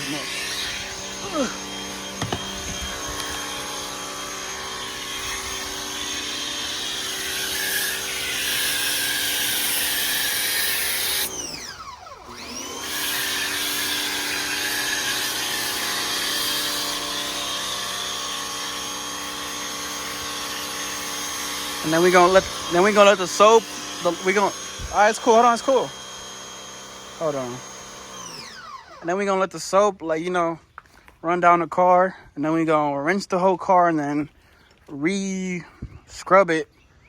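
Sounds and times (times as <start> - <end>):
spray hissing: 0.0 - 11.3, 13.0 - 25.6
pressure washer motor whine: 0.0 - 29.2.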